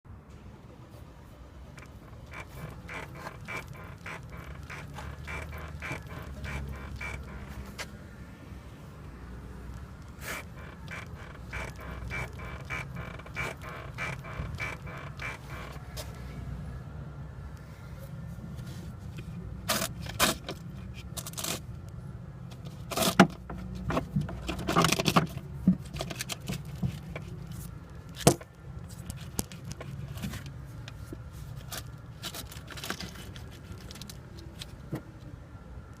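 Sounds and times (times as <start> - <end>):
shock absorbers creaking: 1.7 - 8.0, 9.4 - 16.3, 22.5 - 35.0.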